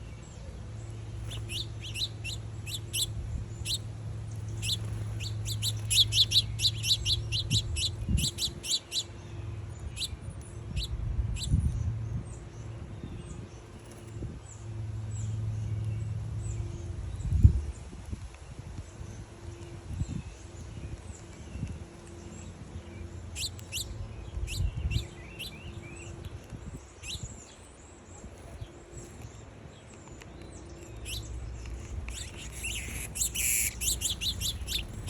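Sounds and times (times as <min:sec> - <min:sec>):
small birds chirping: 0:00.0 - 0:11.9, 0:20.0 - 0:35.0.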